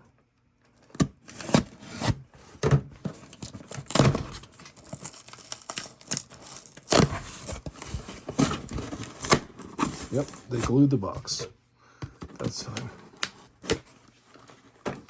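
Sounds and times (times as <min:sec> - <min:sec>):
cardboard tearing and crinkling: 0:00.8 - 0:02.3, 0:03.1 - 0:11.0.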